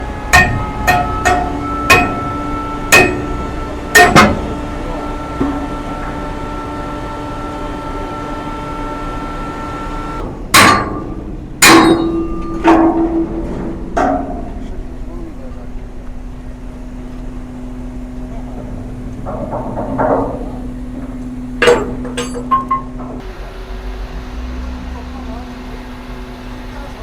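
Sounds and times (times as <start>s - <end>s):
hammer striking ringing steel: 0.3s - 6.0s, 10.6s - 13.4s, 21.6s - 23.0s.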